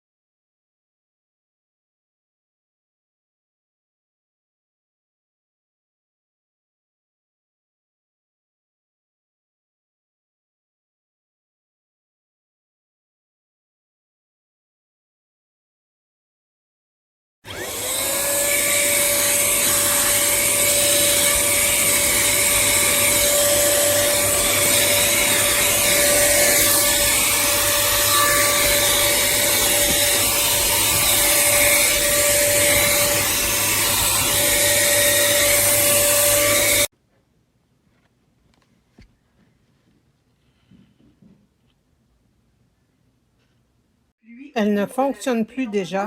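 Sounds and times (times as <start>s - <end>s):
handheld vacuum cleaner whine: 17.5s - 36.9s.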